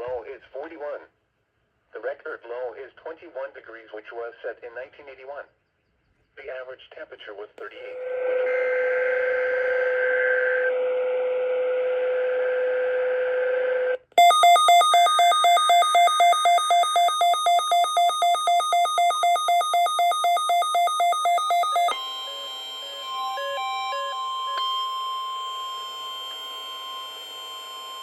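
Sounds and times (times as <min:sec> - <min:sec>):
radio steady tone: 0:14.2 - 0:22.0
rapid electronic alarm beeps: 0:14.2 - 0:28.0.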